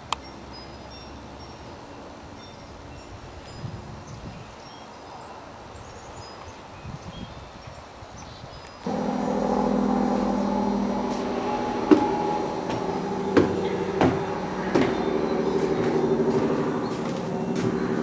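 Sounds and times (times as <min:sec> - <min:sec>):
electric sander humming: 0:08.9 - 0:18.0.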